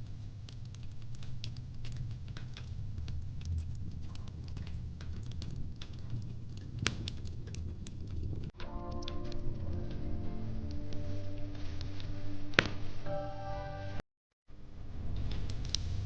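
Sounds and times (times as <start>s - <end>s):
fire crackling with pops: 0.0s - 13.1s, 15.0s - 16.0s
low rumble of flames: 0.0s - 13.1s, 14.6s - 16.0s.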